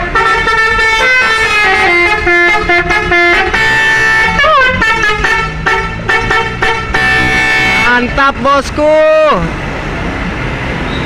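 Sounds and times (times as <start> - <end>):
bus musical horn melody: 0.0 - 8.1.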